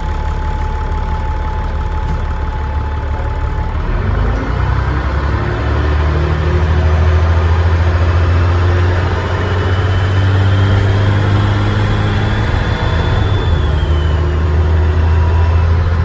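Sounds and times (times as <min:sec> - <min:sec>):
bus diesel engine running: 0:00.0 - 0:16.0
faint turbo whistle: 0:07.7 - 0:16.0.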